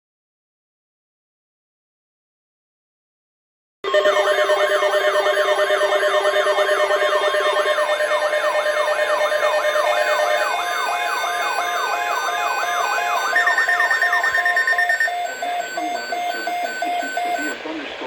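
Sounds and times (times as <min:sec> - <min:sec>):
steady alarm tone: 0:03.8 - 0:17.6
downward sweeping siren tone: 0:03.9 - 0:15.6
high steady tone: 0:03.9 - 0:17.6
rapid beeping: 0:03.9 - 0:17.7.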